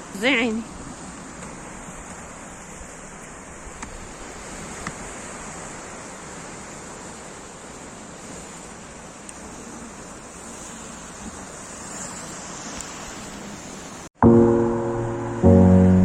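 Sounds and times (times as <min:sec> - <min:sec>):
sea surf washing on shore: 0:00.0 - 0:16.0
faint clicks: 0:09.2 - 0:09.4.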